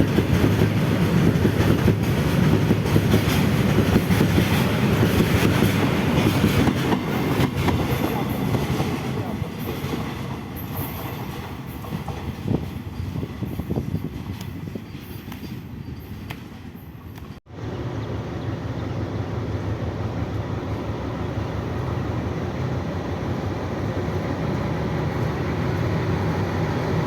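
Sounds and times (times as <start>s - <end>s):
train wheels clattering over rails: 0.0s - 17.4s.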